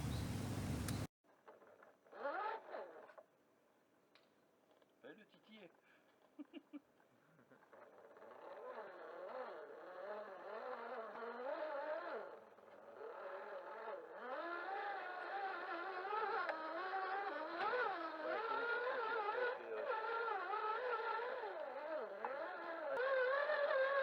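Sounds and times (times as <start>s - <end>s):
electric motor and gearbox whining: 0.0s - 1.1s, 8.2s - 24.0s.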